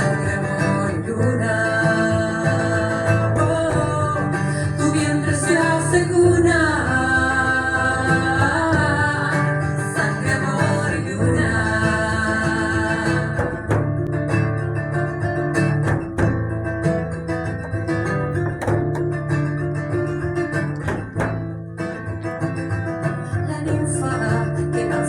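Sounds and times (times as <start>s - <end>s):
person singing: 0.0s - 14.2s, 23.1s - 25.0s
acoustic guitar: 0.0s - 25.0s.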